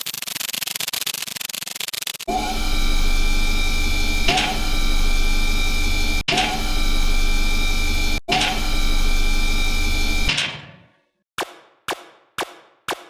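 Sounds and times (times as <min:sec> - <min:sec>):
machine running with high tone: 0:02.2 - 0:10.3.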